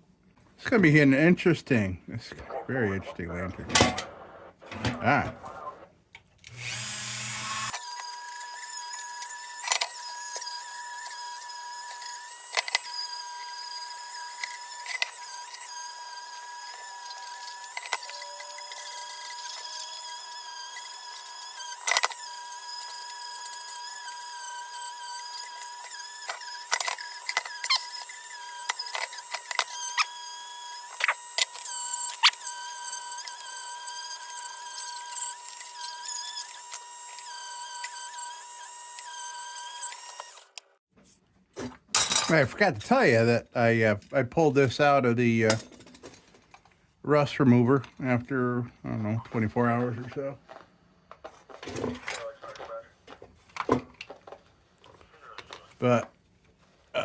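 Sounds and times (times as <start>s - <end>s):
power tool high whine: 6.5s - 40.7s.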